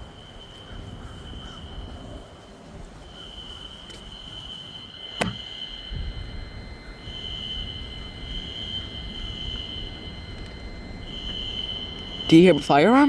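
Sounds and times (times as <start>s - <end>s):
sharp click: 5.2s - 5.4s
fire alarm high-pitched tone: 5.8s - 13.0s.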